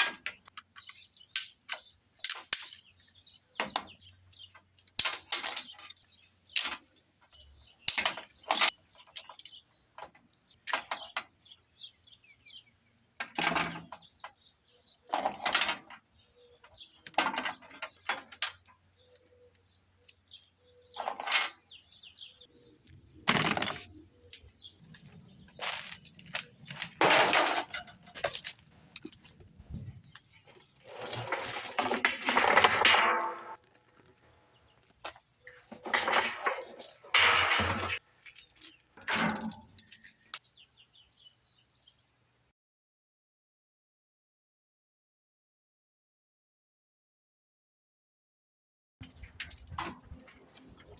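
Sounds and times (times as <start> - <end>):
metal parts and tools clanking: 3.6 - 6.9, 7.9 - 11.4, 13.2 - 14.3, 15.1 - 19.4, 20.3 - 34.2, 35.5 - 40.4, 49.0 - 50.9
rattling clatter: 35.8 - 40.3.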